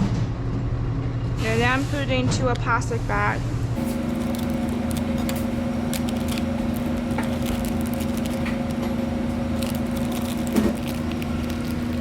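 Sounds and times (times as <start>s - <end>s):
steady electrical hum: 0.0s - 12.0s
plastic bag crinkling: 3.8s - 12.0s.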